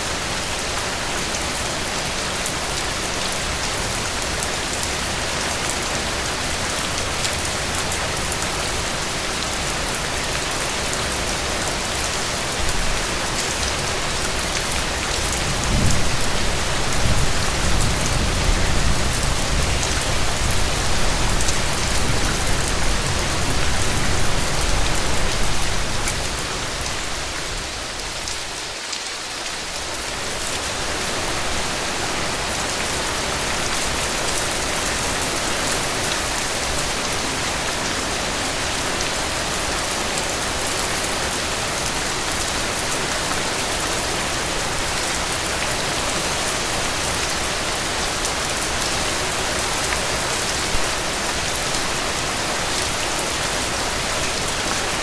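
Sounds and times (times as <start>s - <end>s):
steady rain falling: 0.0s - 55.0s
low rumble of thunder: 15.4s - 25.6s.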